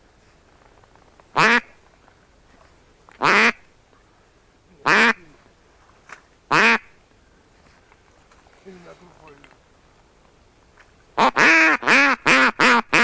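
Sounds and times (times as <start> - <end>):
duck quacking: 1.4 - 1.8, 3.2 - 3.6, 4.8 - 5.4, 6.5 - 6.9, 11.2 - 13.0.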